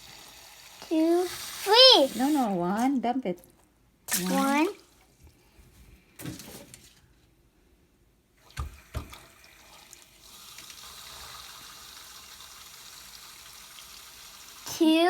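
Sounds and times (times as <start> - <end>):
water running: 0.0 - 3.1, 4.1 - 5.4, 8.4 - 15.0.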